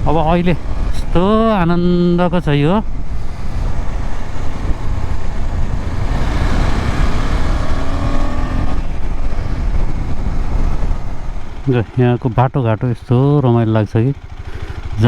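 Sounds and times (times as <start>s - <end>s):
wind rush: 0.0s - 12.0s
motorcycle engine rumble: 0.0s - 15.0s.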